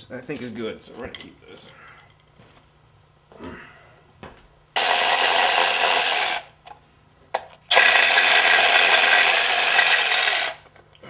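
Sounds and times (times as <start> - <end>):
power tool spinning fasteners: 4.8 - 6.8, 7.4 - 10.7
power tool click: 4.8 - 10.6.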